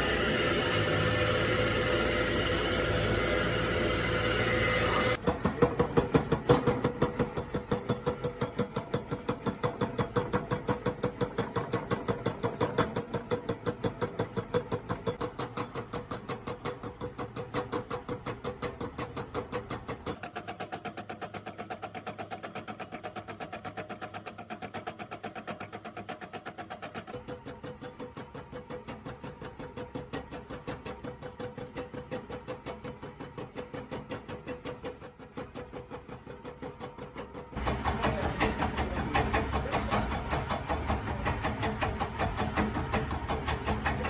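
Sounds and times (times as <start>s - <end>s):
hammering on metal: 33.4s - 44.0s.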